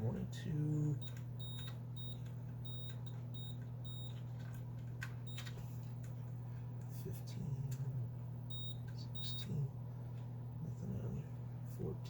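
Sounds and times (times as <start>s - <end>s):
steady low hum: 0.0s - 12.0s
multimeter short high beeps: 1.0s - 4.1s, 8.5s - 9.5s.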